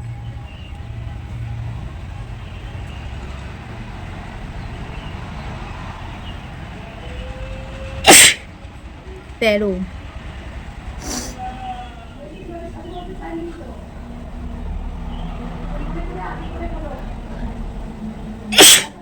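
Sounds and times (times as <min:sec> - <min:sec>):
low rumble of traffic: 0:00.0 - 0:19.0
woman sneezing: 0:08.1 - 0:08.4, 0:18.5 - 0:19.0.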